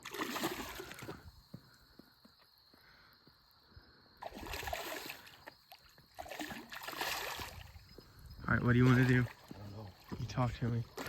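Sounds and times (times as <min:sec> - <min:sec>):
water lapping around boat: 0:04.2 - 0:11.0.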